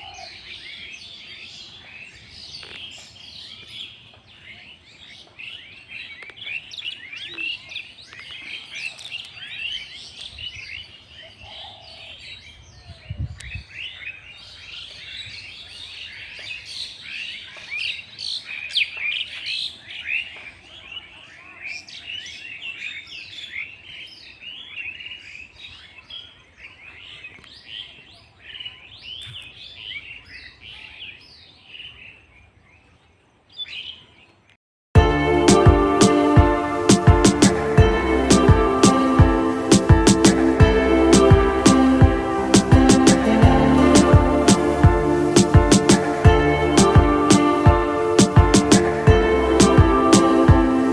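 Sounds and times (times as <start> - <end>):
small birds chirping: 0.0 - 34.6.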